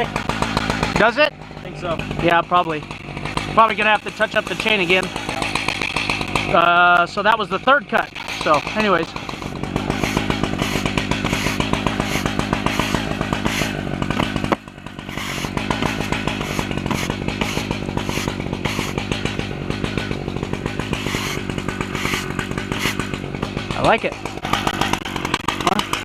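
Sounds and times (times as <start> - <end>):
chainsaw cutting wood: 0.0 - 26.0.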